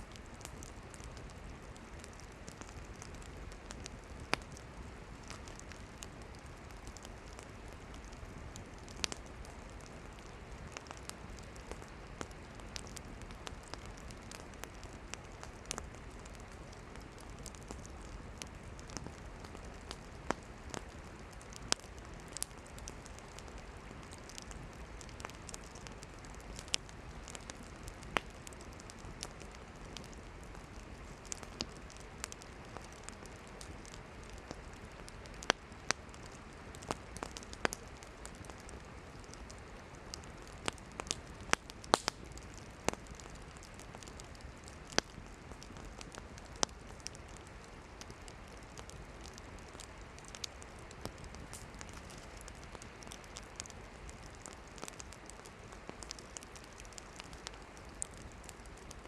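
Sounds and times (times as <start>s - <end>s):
campfire crackling: 0.0s - 59.0s
fire hissing: 0.0s - 59.0s.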